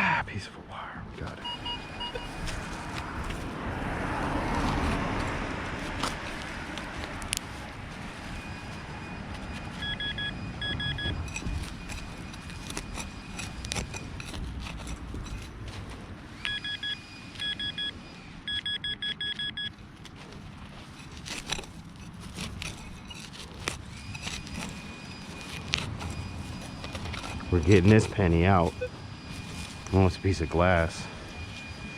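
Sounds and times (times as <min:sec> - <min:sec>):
metal detector beeps: 0:01.4 - 0:02.5, 0:08.1 - 0:14.1, 0:16.4 - 0:19.8, 0:24.0 - 0:31.9
sharp knocks and scrapes: 0:11.0 - 0:16.2, 0:20.2 - 0:28.7.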